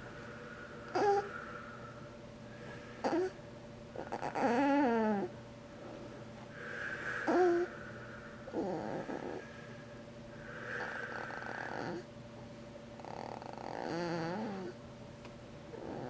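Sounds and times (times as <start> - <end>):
person snoring: 0.9 - 1.5, 6.6 - 7.8, 8.5 - 9.5, 10.5 - 12.1, 15.8 - 16.0.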